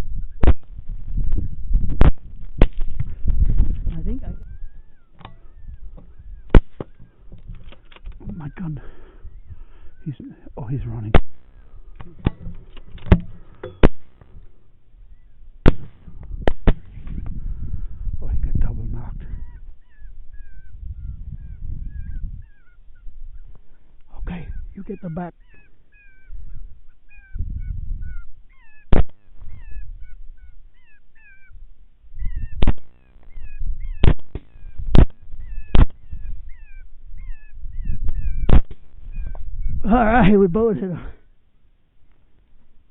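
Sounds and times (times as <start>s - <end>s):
coyote yips and whimpers: 3.9s - 41.3s
rifle shots: 13.0s - 14.3s, 15.6s - 17.0s.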